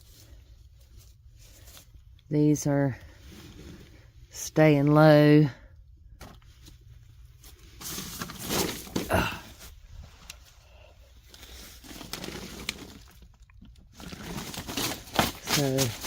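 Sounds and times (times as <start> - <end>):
rustling and crinkling handling noise: 0.0 - 5.0, 5.8 - 16.0.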